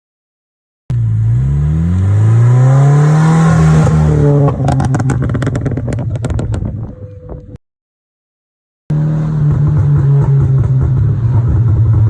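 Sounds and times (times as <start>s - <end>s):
car engine revving: 0.9s - 6.6s, 8.9s - 12.0s
exhaust pops and crackles: 4.5s - 7.6s.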